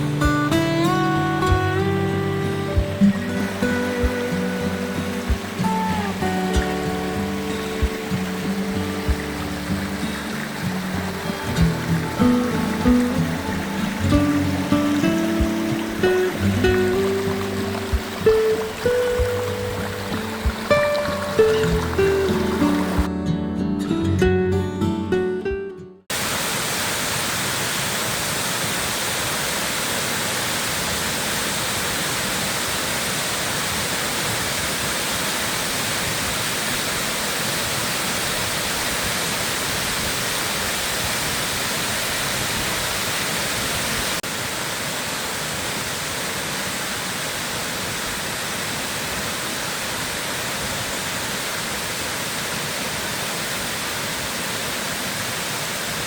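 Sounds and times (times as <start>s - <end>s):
rushing waterfall: 0.0s - 23.1s, 26.1s - 56.0s
music track: 0.0s - 26.0s.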